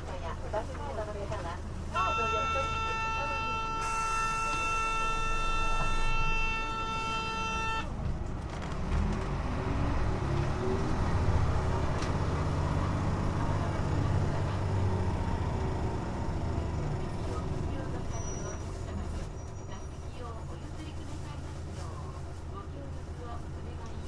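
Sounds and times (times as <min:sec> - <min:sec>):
bus diesel engine revving: 0:08.6 - 0:19.3.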